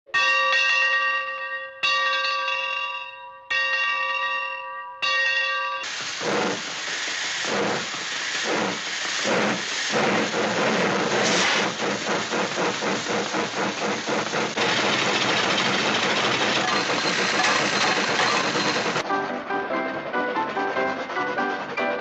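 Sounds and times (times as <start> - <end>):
cartoon steam locomotive chuffing: 5.8 - 22.0
steady hissing rush: 5.8 - 22.0.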